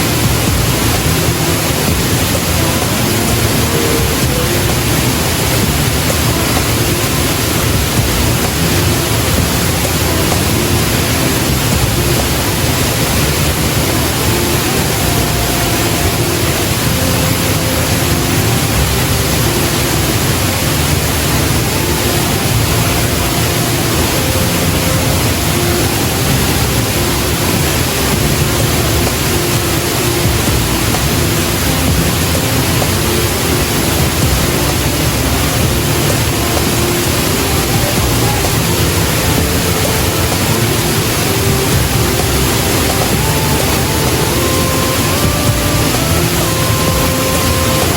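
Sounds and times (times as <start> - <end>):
waterfall roaring: 0.0 - 47.9.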